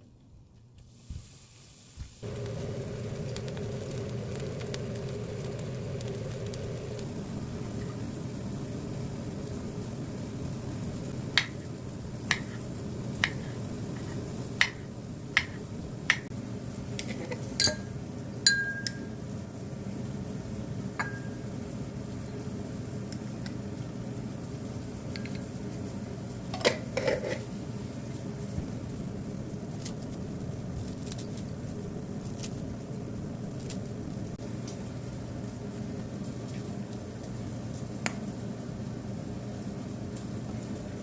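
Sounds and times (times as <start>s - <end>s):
steady low hum: 2.2s - 36.2s
utensils and dishes clinking: 17.0s - 19.1s, 26.5s - 27.5s.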